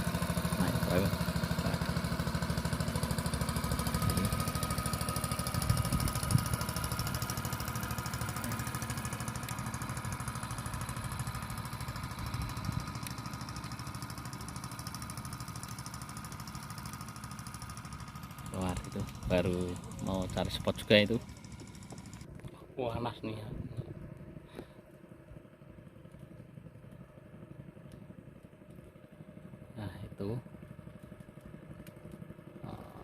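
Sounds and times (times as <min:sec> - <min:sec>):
boat engine chugging: 0:00.0 - 0:33.0.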